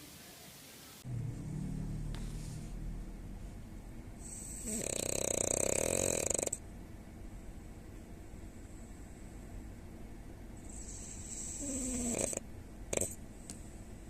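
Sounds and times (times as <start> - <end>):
person snoring: 4.2 - 6.6, 10.7 - 13.2.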